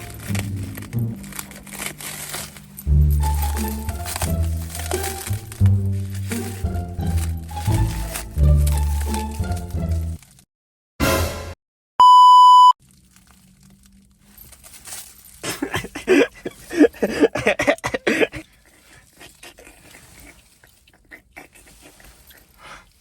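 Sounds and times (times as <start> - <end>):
censor bleep: 12.0 - 12.8.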